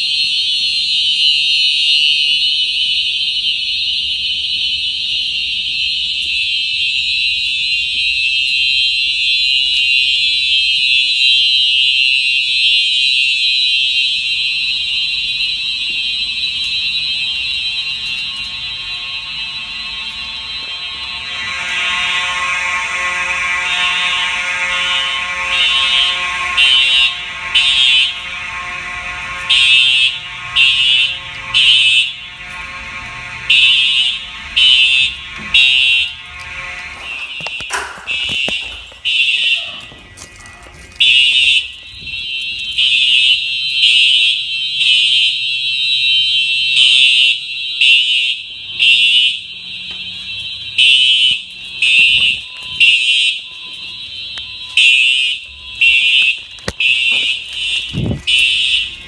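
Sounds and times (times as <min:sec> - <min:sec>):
continuous horn tone: 0:00.0 - 0:59.0
fire alarm horns pulsing: 0:00.0 - 0:59.0
steady buzzing horn tone: 0:00.0 - 0:59.0.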